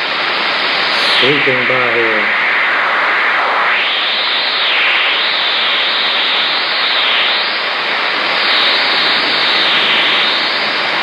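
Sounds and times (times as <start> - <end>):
radio receiver static: 0.9 - 4.0.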